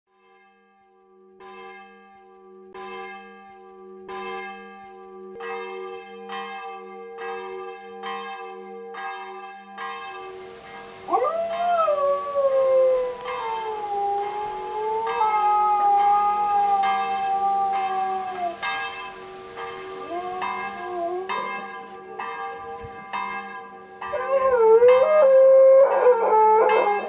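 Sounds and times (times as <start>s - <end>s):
church bell tolling: 0.2s - 27.0s
dog howling: 10.8s - 22.0s, 24.1s - 27.0s.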